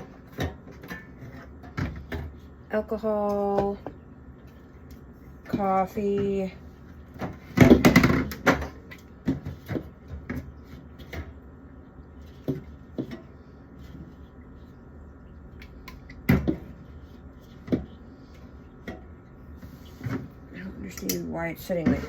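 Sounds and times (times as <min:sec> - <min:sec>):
bottles and cans clunking: 0:07.2 - 0:10.5.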